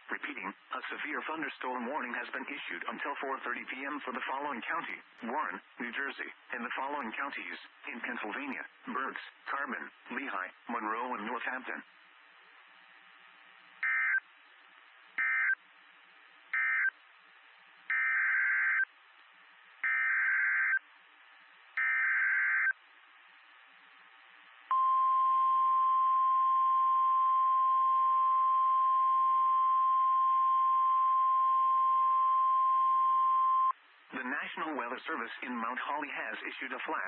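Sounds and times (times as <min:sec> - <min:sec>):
faint radio hiss: 0:00.0 - 0:37.0
steady warning alarm tone: 0:13.8 - 0:14.2, 0:15.2 - 0:15.6, 0:16.6 - 0:16.9, 0:17.9 - 0:18.9, 0:19.8 - 0:20.8, 0:21.8 - 0:22.7.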